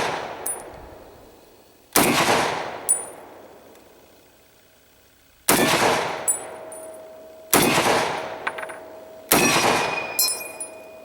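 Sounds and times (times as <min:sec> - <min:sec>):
bullet pinging steel plate: 0:00.4 - 0:00.8, 0:02.9 - 0:03.2, 0:05.6 - 0:11.0
rifle shots echoing: 0:02.0 - 0:03.4, 0:05.5 - 0:10.8.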